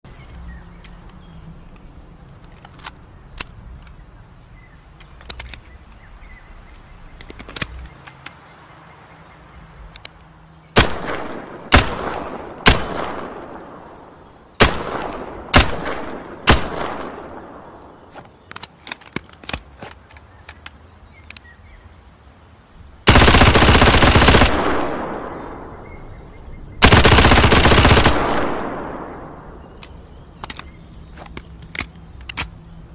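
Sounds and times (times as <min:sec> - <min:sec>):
gun clicks: 0:00.8 - 0:04.0, 0:04.9 - 0:06.1, 0:06.7 - 0:08.5, 0:09.8 - 0:21.5, 0:23.1 - 0:25.8, 0:26.8 - 0:32.8
full-auto gunfire bursts: 0:10.8 - 0:13.8, 0:14.6 - 0:17.7, 0:23.1 - 0:25.7, 0:26.8 - 0:29.4
single gunshots with echo: 0:10.8 - 0:18.1, 0:23.1 - 0:26.0, 0:26.8 - 0:29.8.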